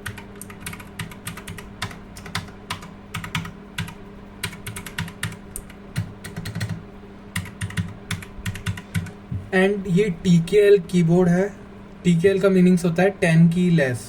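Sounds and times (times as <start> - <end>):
mechanical keyboard typing: 0.0 - 6.8, 7.4 - 9.1.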